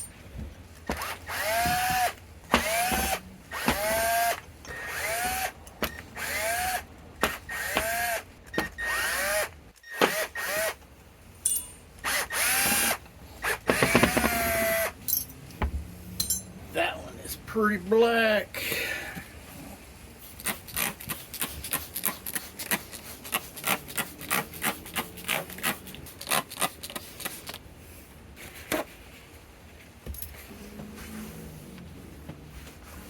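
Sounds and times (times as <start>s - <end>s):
cordless drill whining: 0.9s - 10.8s, 12.0s - 15.0s.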